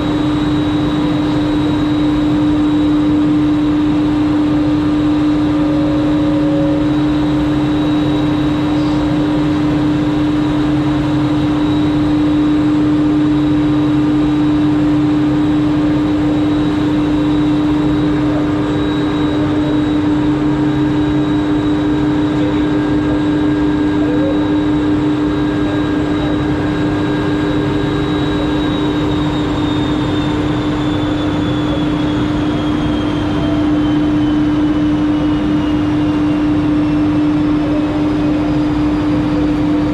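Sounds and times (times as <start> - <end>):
faint high whine: 0.0 - 39.9
ropeway drive machinery humming: 0.0 - 39.9.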